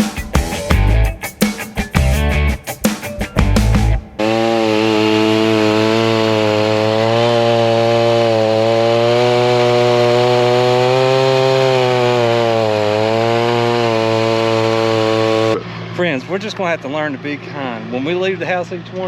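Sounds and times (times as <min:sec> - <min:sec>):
rock music: 0:00.0 - 0:04.2
chainsaw running: 0:03.6 - 0:15.7.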